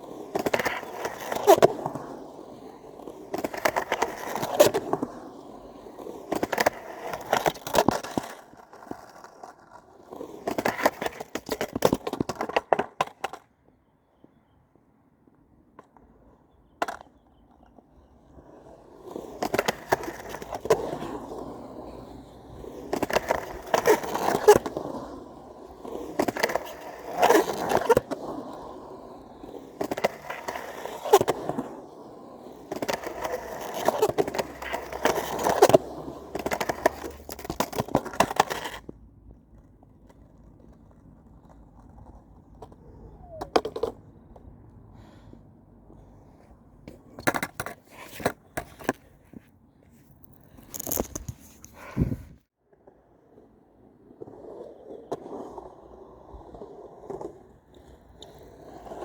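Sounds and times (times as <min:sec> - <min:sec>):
skateboard wheels rolling: 0:00.0 - 0:59.0
skateboard clacks: 0:18.4 - 0:44.6.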